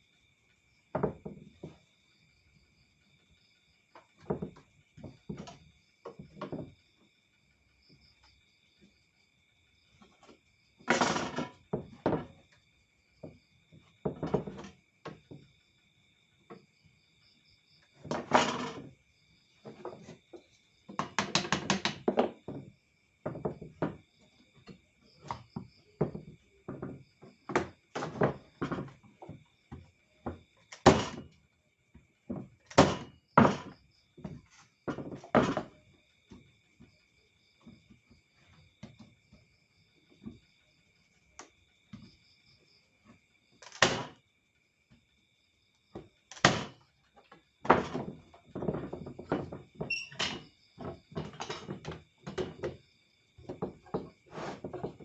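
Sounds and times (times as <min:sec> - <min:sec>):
wooden parts knocking: 0:00.9 - 0:01.8, 0:04.0 - 0:06.8, 0:10.2 - 0:12.4, 0:14.0 - 0:15.5, 0:18.0 - 0:18.9, 0:19.6 - 0:31.4, 0:32.3 - 0:36.9, 0:43.0 - 0:44.2, 0:45.9 - 0:52.8, 0:53.4 - 0:55.0.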